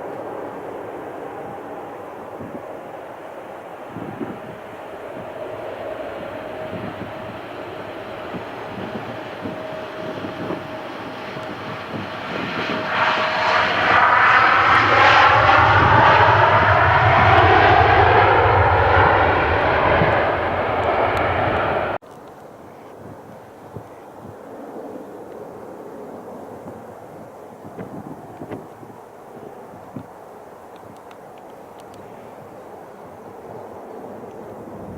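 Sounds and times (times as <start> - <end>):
jet airliner passing: 0.0 - 22.0, 24.2 - 28.4
jet engine whine falling in pitch: 0.0 - 22.0.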